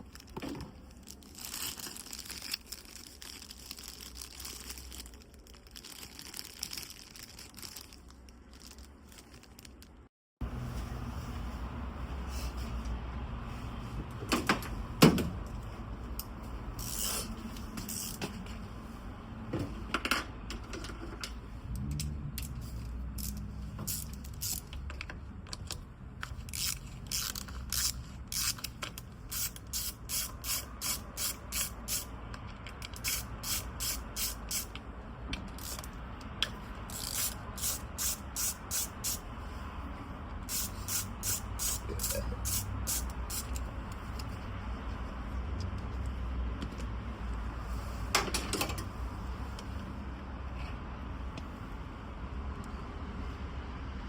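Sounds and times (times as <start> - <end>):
ratchet wrench clicking: 16.8 - 18.2, 23.2 - 32.1, 32.8 - 34.8, 35.5 - 35.9, 36.9 - 39.2, 40.5 - 43.7.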